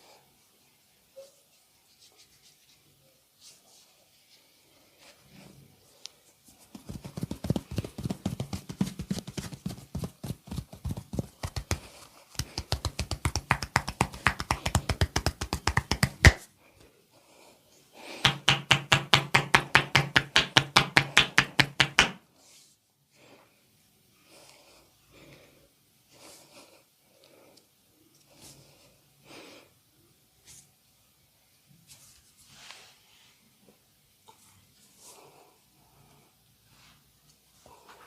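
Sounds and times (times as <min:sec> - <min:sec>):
hands chopping and slapping on body: 0:12.4 - 0:16.4, 0:18.2 - 0:22.2.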